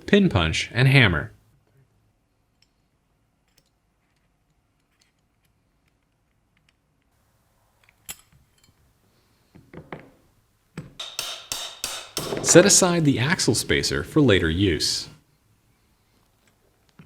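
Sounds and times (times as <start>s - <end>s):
short knocks: 11.0s - 12.9s.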